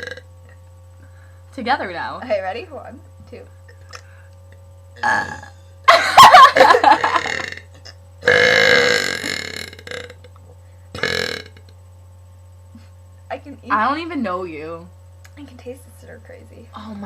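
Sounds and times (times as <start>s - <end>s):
girls burping: 5.0s - 5.6s, 6.5s - 9.7s.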